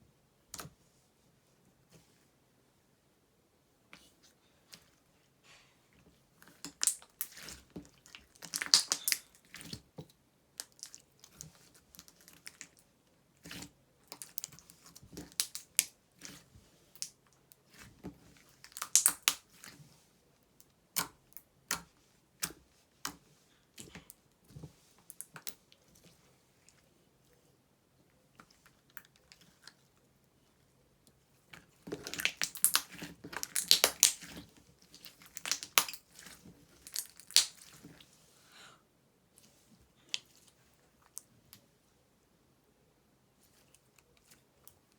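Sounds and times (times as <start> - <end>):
slime squishing and popping: 8.1 - 9.8, 15.2 - 15.9, 18.6 - 19.5, 31.9 - 36.2, 36.8 - 37.7.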